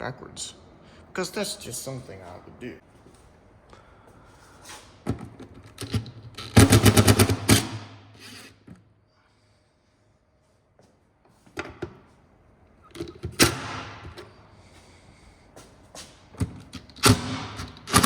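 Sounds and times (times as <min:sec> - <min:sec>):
loud rapid rattle: 0:06.4 - 0:07.8.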